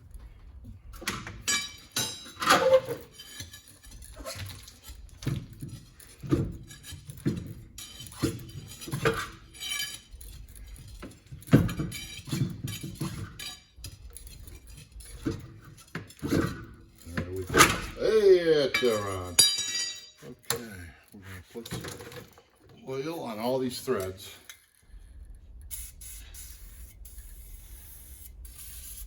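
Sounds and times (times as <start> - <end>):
metal clanks and clinks: 1.0 - 20.7, 21.6 - 22.5.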